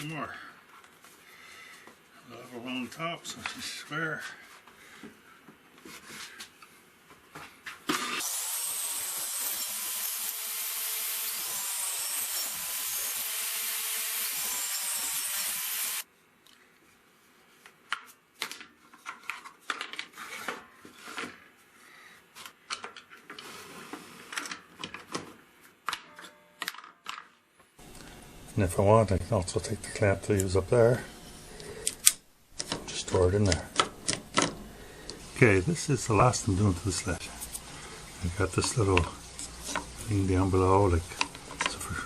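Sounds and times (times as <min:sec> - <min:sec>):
table saw cutting wood: 0:08.0 - 0:16.0.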